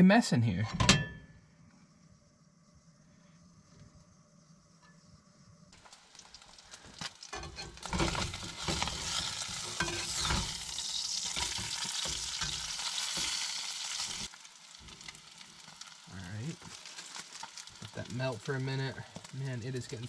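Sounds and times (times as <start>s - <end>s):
meat sizzling in a frying pan: 5.8s - 20.0s.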